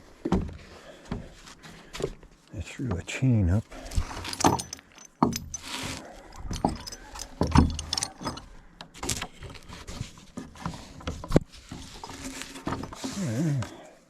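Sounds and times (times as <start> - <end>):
metal chain rattling: 3.8 - 8.6.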